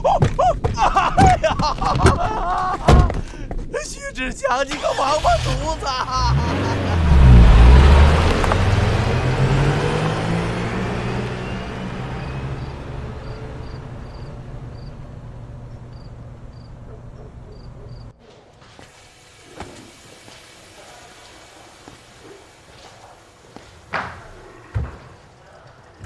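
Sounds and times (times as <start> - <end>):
car engine revving and pulling away: 4.7 - 16.1, 18.9 - 25.2
faint high chirps: 10.9 - 15.0.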